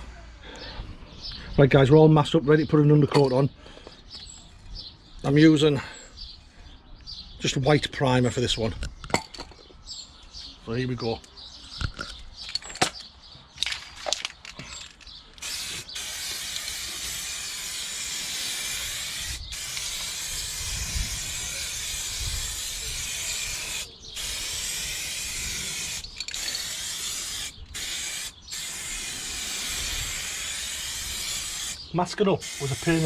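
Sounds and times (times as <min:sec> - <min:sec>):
aerosol can spraying: 0:15.4 - 0:31.8, 0:32.4 - 0:33.0.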